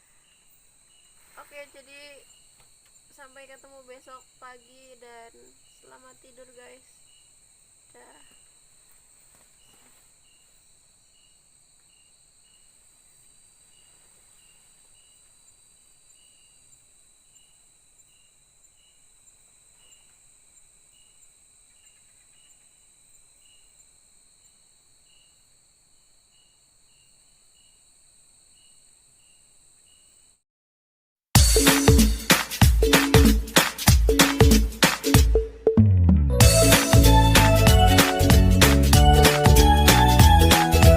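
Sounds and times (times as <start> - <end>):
cricket chirping: 0.0 - 30.4
insects droning: 0.0 - 30.4.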